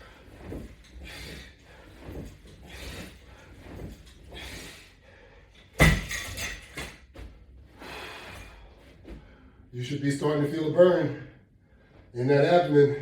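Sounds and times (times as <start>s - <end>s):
man breathing hard: 0.9s - 5.7s, 7.7s - 9.7s.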